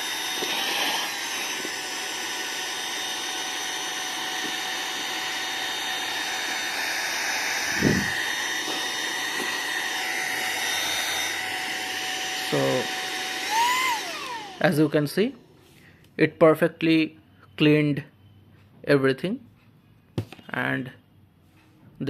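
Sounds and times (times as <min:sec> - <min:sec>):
handheld vacuum cleaner running: 0:00.0 - 0:15.1.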